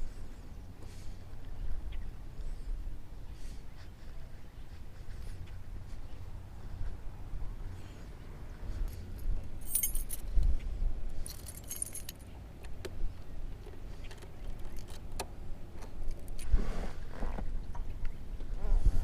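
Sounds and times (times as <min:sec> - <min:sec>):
bright metallic jingling: 0:09.6 - 0:10.3, 0:11.2 - 0:12.3.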